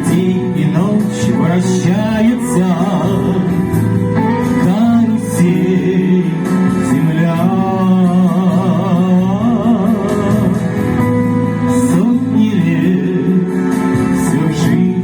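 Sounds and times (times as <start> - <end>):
song with singing and instruments: 0.0 - 15.0.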